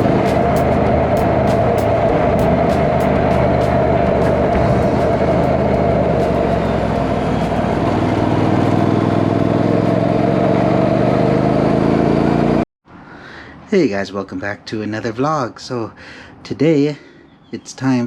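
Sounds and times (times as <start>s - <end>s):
vehicle engine running: 0.0s - 12.6s.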